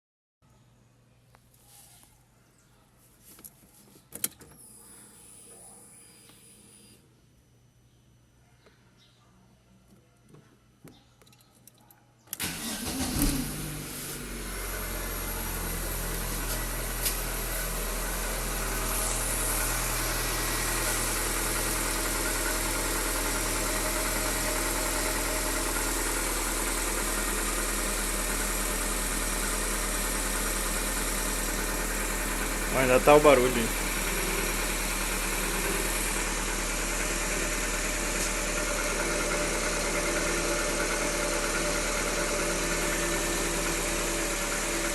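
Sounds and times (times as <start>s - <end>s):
engine cranking and idling: 12.3s - 44.9s
engine top noise: 12.4s - 23.6s, 32.4s - 36.7s.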